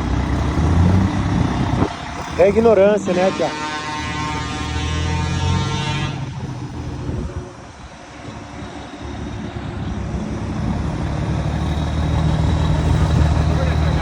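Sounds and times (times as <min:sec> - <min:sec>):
diesel truck engine revving: 0:00.0 - 0:14.0.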